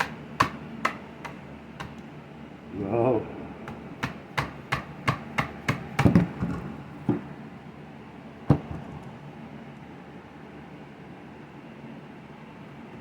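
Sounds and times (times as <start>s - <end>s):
hammer tapping: 0.0s - 2.0s, 3.6s - 7.3s.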